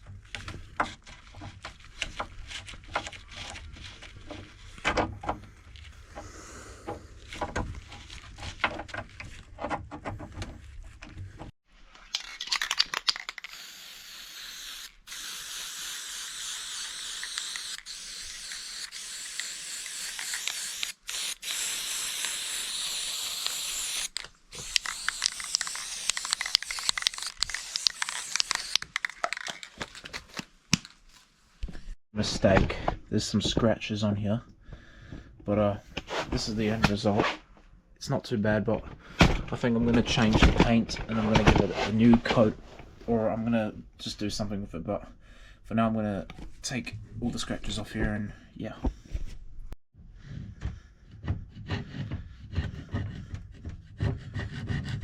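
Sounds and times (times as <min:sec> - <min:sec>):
knocks and handling clicks: 0:12.1 - 0:13.6, 0:24.0 - 0:31.0
paint spray hissing: 0:13.4 - 0:29.1.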